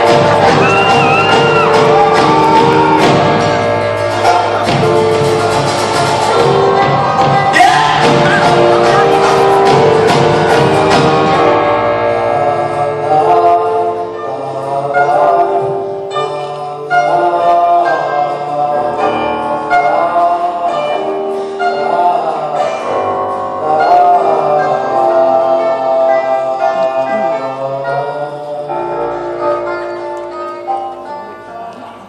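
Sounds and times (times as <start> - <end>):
live rock band playing: 0.0 - 17.8.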